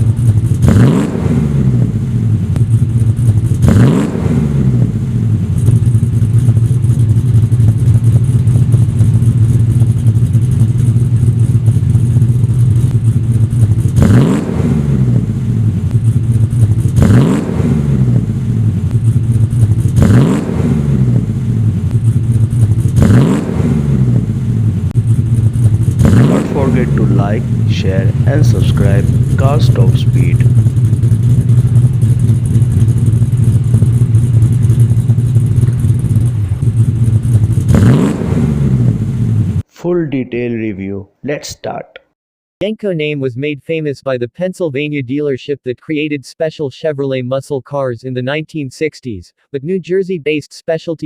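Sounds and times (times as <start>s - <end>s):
pickup truck engine idling and revving: 0.0s - 39.7s.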